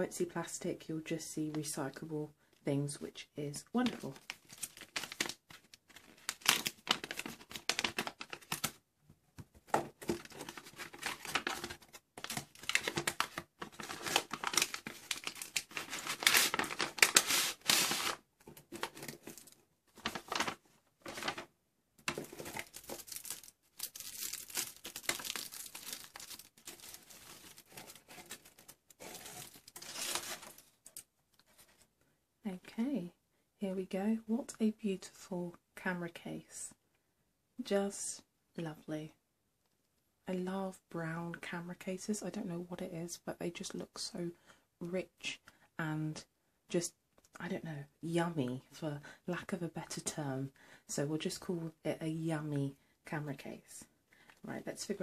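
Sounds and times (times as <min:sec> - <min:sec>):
paper packaging crinkling and tearing: 0:03.8 - 0:08.8, 0:10.0 - 0:21.5, 0:22.1 - 0:31.0.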